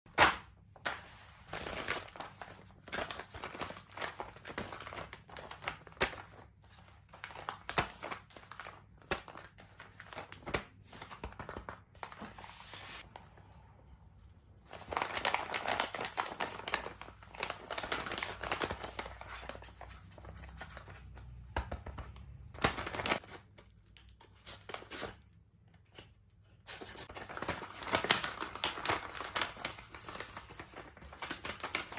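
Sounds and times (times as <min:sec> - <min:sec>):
paper crinkling and tearing: 0:00.8 - 0:13.1, 0:14.7 - 0:20.9, 0:26.7 - 0:31.9.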